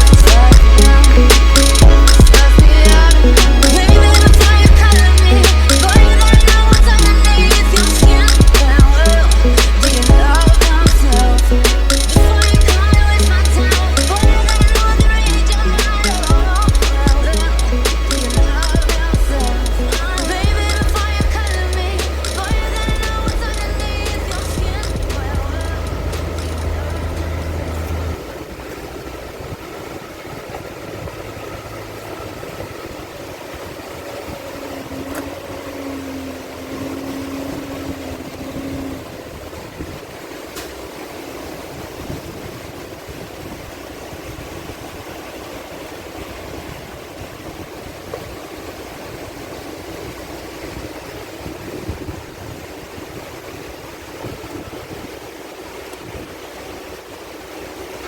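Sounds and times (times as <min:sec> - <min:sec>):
low steady hum: 0:00.0 - 0:41.8
truck engine and road noise: 0:00.0 - 0:58.0.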